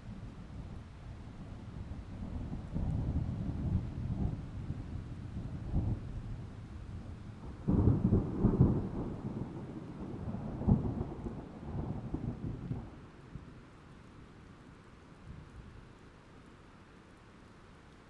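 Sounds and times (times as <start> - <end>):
rain: 0.0 - 18.0
thunder rumbling: 7.4 - 13.0.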